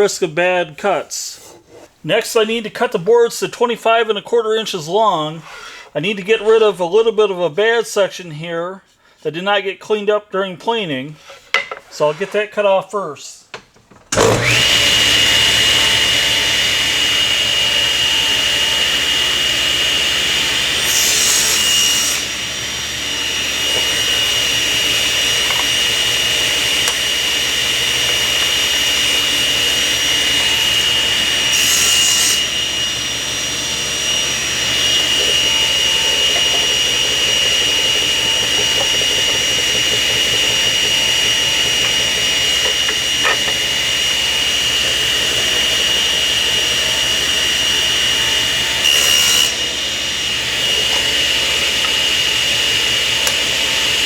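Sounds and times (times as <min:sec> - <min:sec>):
saw cutting wood rasping: 0:00.9 - 0:02.0, 0:14.1 - 0:54.0
table saw whining: 0:14.0 - 0:54.0.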